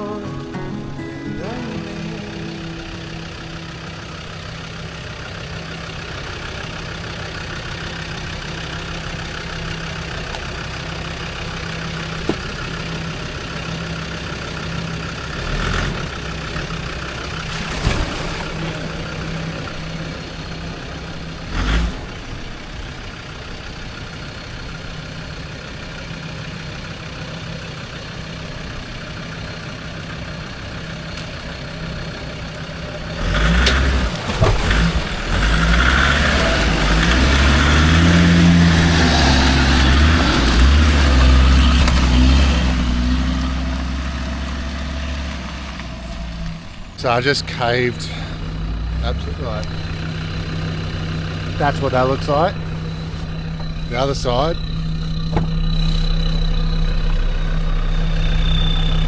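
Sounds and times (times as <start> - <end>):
off-road vehicle engine running: 0.0 - 59.0
vehicle body knocks and thumps: 55.2 - 55.8.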